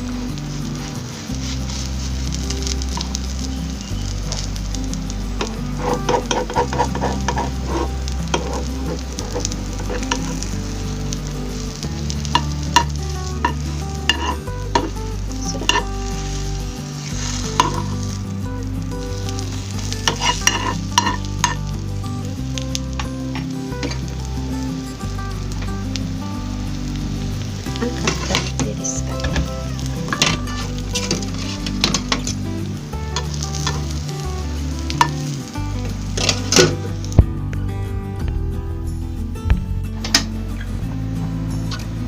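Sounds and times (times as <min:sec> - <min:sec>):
sausages sizzling in oil: 0:00.0 - 0:37.3
utensil clicking and scraping pan: 0:05.8 - 0:10.4, 0:12.4 - 0:15.9, 0:20.0 - 0:21.6.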